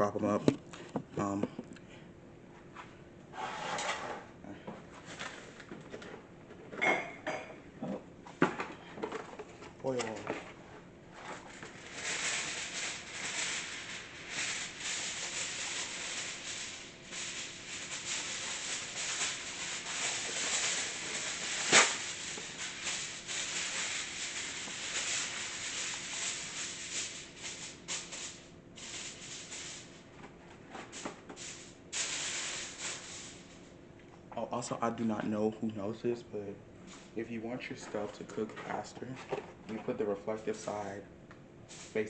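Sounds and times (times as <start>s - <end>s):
aluminium foil crinkling: 11.1s - 30.1s, 30.7s - 33.6s, 41.7s - 42.0s.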